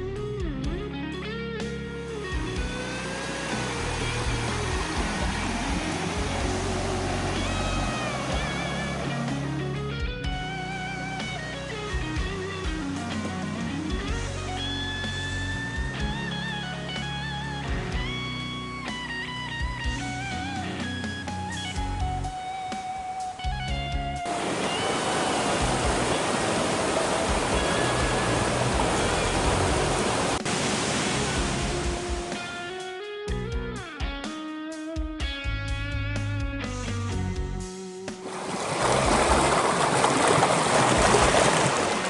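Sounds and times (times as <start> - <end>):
electric guitar music with beat: 0.0 - 26.2, 27.2 - 39.6
faint music: 1.9 - 16.4, 24.2 - 30.4
waterfall rushing: 2.1 - 9.8, 24.2 - 32.4, 38.2 - 42.0.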